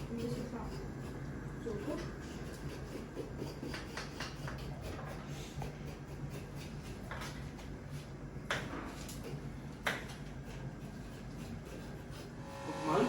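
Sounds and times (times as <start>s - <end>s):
steady low hum: 10.7s - 13.0s.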